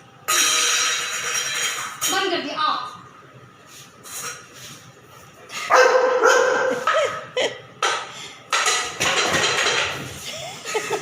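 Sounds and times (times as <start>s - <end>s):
dog barking loudly: 5.7s - 6.9s.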